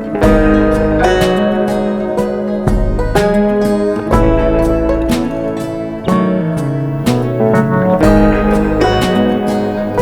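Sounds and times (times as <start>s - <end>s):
acoustic guitar strumming: 0.0s - 10.0s
steady beat: 0.0s - 10.0s
bass line: 6.1s - 10.0s.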